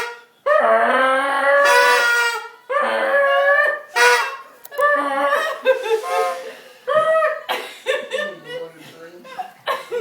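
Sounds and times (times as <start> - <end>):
loud pitch-bending honks: 3.9 - 4.6.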